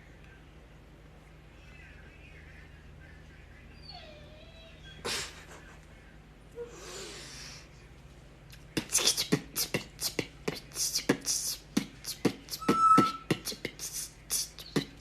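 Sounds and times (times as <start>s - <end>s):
parrot whistle: 12.6s - 13.3s.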